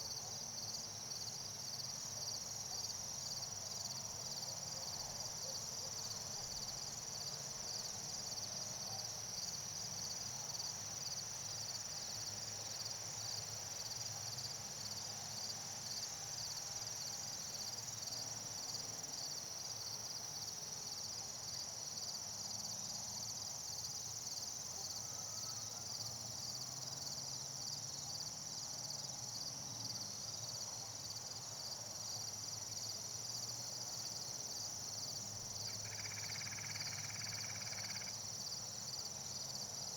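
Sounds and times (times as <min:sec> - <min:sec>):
insects chirping: 0:23.6 - 0:39.9.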